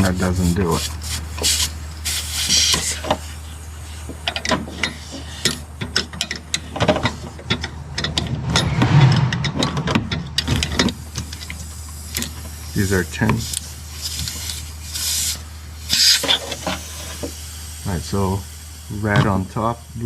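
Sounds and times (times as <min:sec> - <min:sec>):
low hum: 0:05.5 - 0:12.8.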